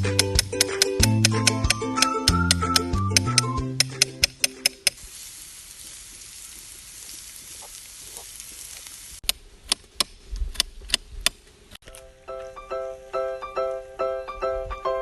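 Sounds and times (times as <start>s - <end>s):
piano music: 0.0s - 4.7s, 12.0s - 15.0s
food sizzling in a pan: 5.0s - 9.2s.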